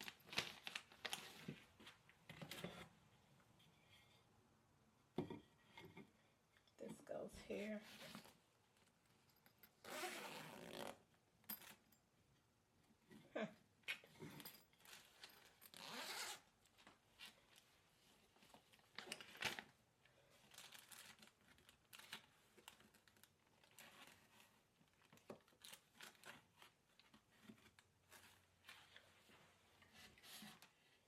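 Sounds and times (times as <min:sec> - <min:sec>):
chair parts rustling and scraping: 0:00.0 - 0:04.2, 0:14.0 - 0:19.7, 0:20.4 - 0:31.0.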